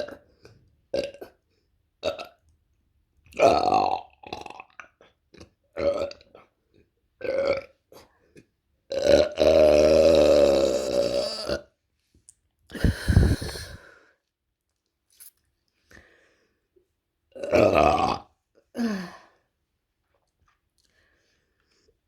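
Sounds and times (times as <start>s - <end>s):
woman burping: 8.9s - 11.7s, 17.4s - 19.3s.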